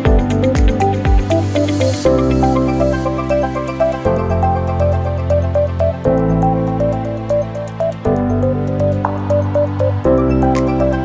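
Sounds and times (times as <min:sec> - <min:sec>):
synth melody: 0:00.0 - 0:11.0
light percussion ticks: 0:00.1 - 0:01.4.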